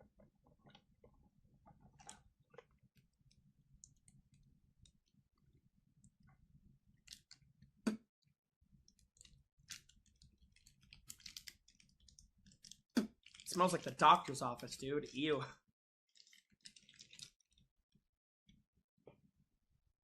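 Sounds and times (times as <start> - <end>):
packaging clicks and crinkles: 8.9 - 14.8, 16.2 - 17.6.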